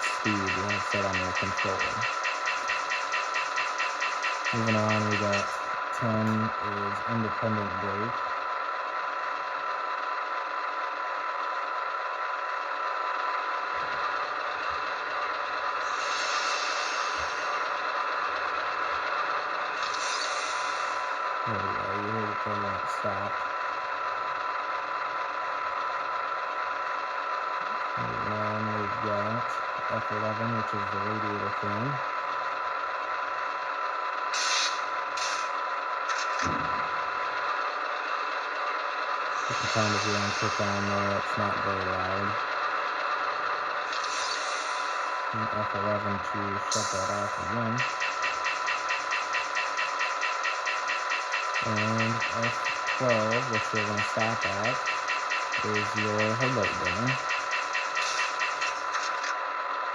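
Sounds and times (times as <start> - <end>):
diesel engine sound from small speaker: 0.0 - 59.9
radiator fans: 0.0 - 59.9
air brake hiss: 15.9 - 17.4, 34.4 - 35.5.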